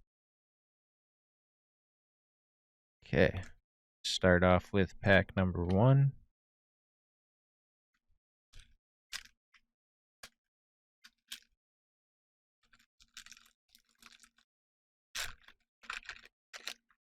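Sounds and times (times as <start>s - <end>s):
plastic wrapper crinkling and tearing: 12.7s - 14.4s, 15.2s - 17.0s.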